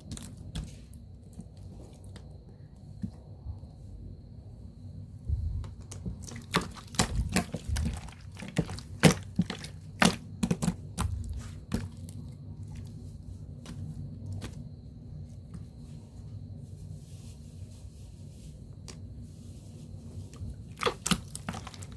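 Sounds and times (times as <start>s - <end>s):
slime popping and crackling: 20.7s - 21.9s.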